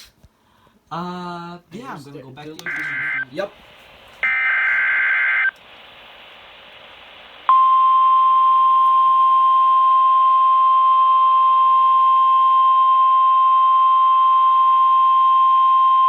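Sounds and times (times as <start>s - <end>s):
faint radio hiss: 0.0s - 9.4s
steady warning alarm tone: 2.7s - 5.5s.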